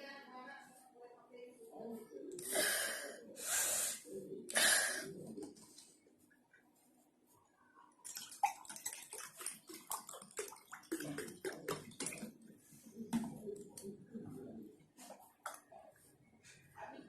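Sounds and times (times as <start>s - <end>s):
liquid pouring and splashing: 8.0s - 12.4s
soda fizzing in a glass: 8.1s - 12.4s.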